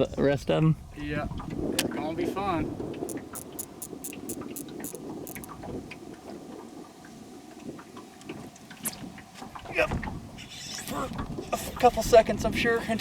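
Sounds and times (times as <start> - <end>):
small clicks and rustles: 3.1 - 5.6.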